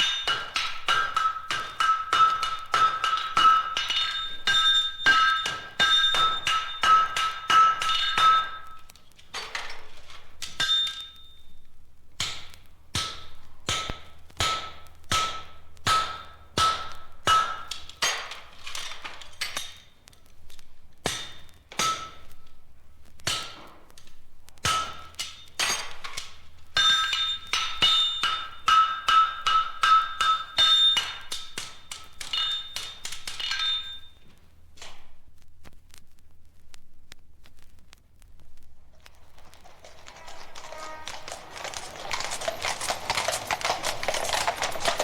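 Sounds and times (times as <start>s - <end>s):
metal struck ringing: 0.0s - 8.9s.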